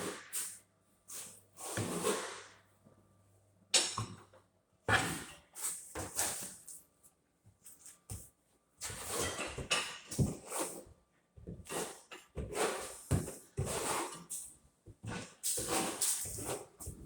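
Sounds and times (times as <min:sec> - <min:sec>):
trowel scraping adhesive on wall: 0:01.1 - 0:02.6, 0:11.6 - 0:14.4, 0:15.1 - 0:17.0.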